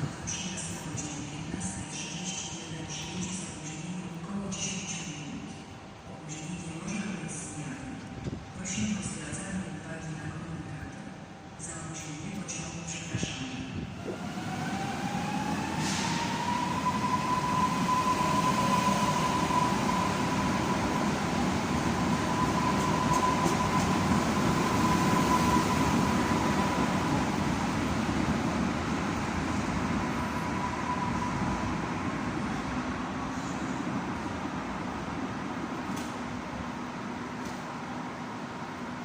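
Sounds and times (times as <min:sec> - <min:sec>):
train whine: 0:13.8 - 0:39.0.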